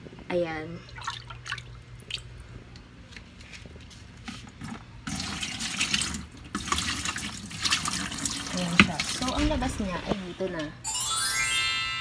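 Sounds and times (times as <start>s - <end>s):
water running and splashing: 5.1s - 10.2s.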